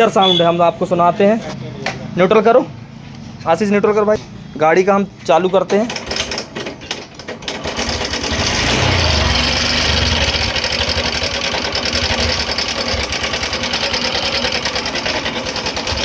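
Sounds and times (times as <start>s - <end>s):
motorcycle engine idling with clatter: 5.8s - 16.0s.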